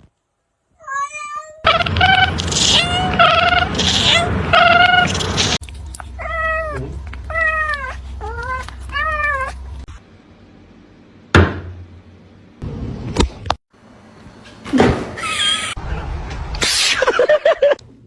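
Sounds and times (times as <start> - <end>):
cat meowing: 0.8 - 5.2, 6.2 - 9.8.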